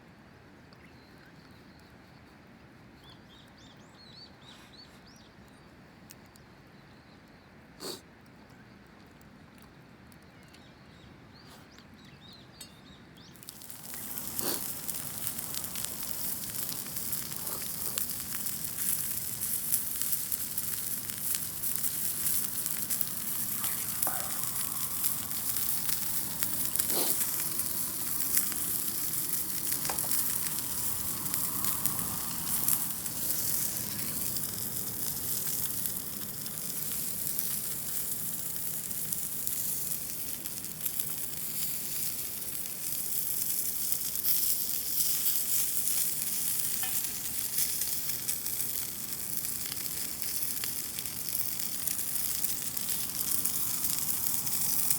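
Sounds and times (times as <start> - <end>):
meat sizzling in a pan: 13.4 - 54.9.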